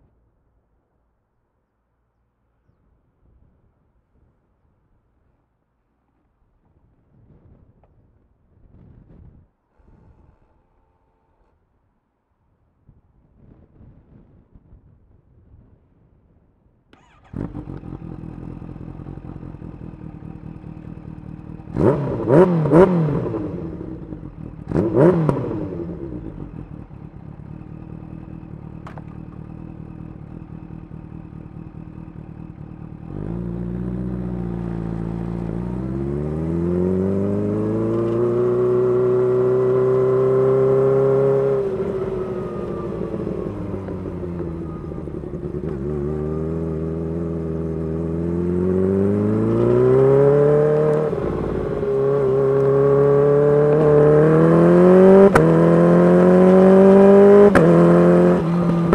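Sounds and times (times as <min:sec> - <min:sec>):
motorcycle engine idling: 0:17.0 - 0:22.5, 0:23.2 - 0:35.8, 0:41.6 - 0:48.0
motorcycle accelerating through gears: 0:17.0 - 0:58.9
motorcycle throttle blip: 0:28.7 - 0:29.8, 0:50.7 - 0:52.8, 0:53.6 - 0:54.0, 0:55.2 - 0:55.7.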